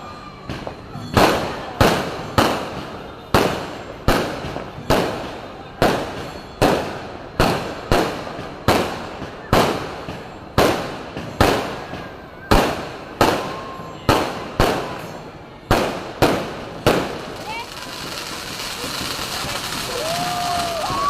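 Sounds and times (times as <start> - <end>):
fireworks bangs: 0.4 - 21.0.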